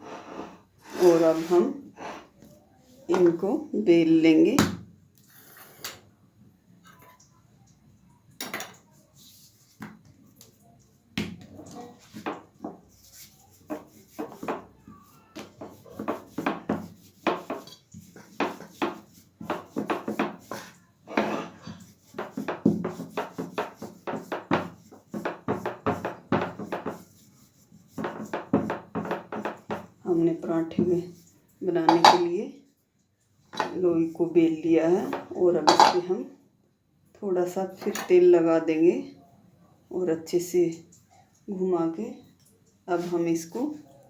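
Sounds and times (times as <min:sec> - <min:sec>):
rolling pin rolling dough: 0:11.6 - 0:32.2.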